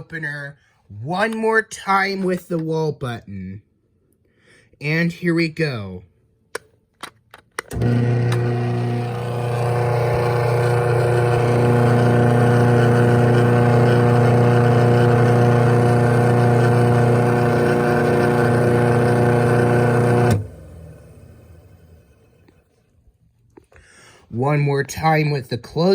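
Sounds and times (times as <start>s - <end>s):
garage door opener clicks: 7.5s - 21.4s
garage door opener motor running: 7.7s - 22.5s.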